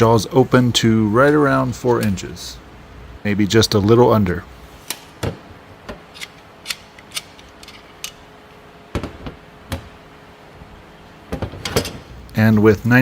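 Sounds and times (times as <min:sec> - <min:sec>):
pliers clicking: 0:06.1 - 0:08.2.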